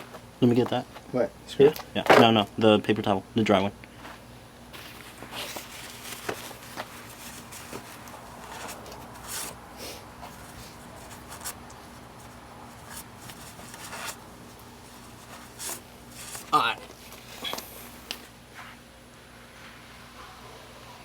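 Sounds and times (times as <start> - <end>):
faint steady hum: 0.0 - 21.0
paper towel rustling: 4.0 - 20.8.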